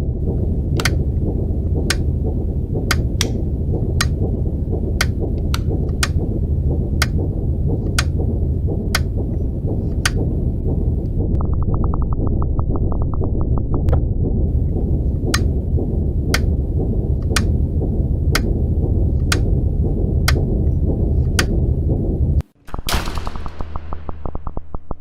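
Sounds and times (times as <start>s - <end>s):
fast dull clicking: 0.0s - 11.2s, 14.5s - 22.4s
low industrial drone: 0.0s - 22.6s
clock-like mechanical ticks: 0.1s - 11.2s, 14.5s - 22.4s.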